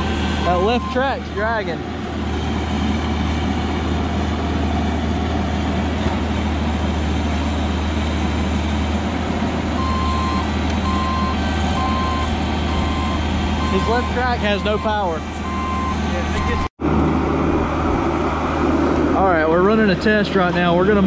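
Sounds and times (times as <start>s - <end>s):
excavator diesel engine running: 0.0s - 21.0s
travel alarm beeping: 9.8s - 16.7s.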